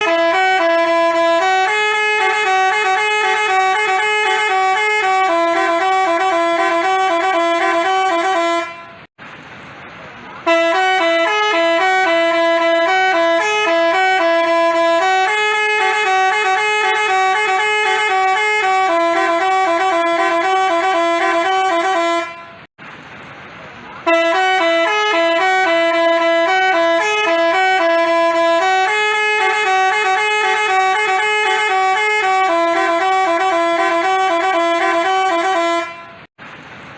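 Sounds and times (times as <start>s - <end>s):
multi-tone bus horn tune: 0.0s - 9.1s, 10.4s - 22.7s, 24.0s - 36.3s.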